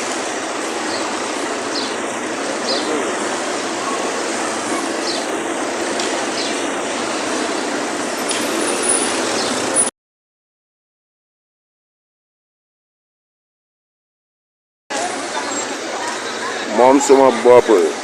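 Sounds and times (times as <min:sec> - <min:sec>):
steady rushing noise: 0:00.0 - 0:09.9
faint voices: 0:00.3 - 0:08.2, 0:14.9 - 0:18.0.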